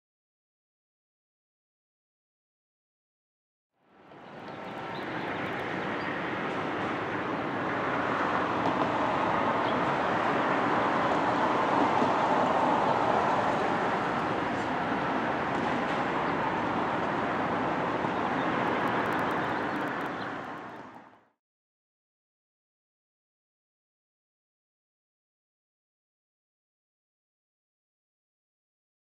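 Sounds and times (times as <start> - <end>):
vehicle running: 3.9 - 21.3.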